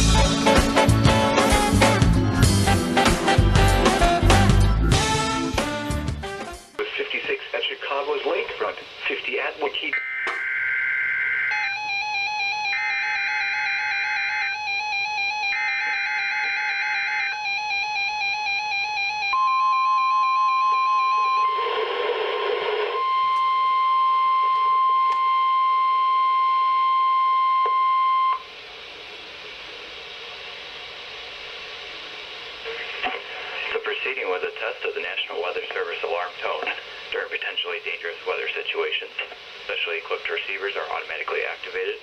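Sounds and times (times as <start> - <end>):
radio hiss: 6.8 - 10.0, 28.5 - 42.0
radio static burst: 6.8 - 10.4, 32.6 - 42.0
steady high alarm tone: 9.9 - 28.5.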